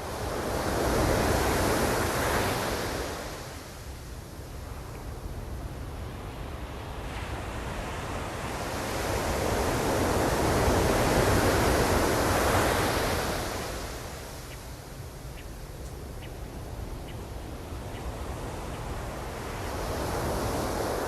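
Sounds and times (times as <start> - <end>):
low rumble of surf: 0.0 - 21.0.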